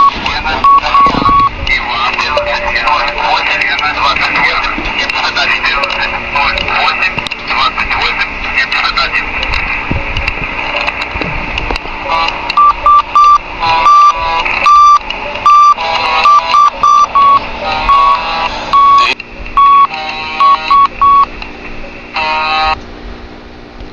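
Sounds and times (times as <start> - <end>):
short electronic beeps: 0.0 - 1.6, 2.3 - 3.4, 12.5 - 21.3.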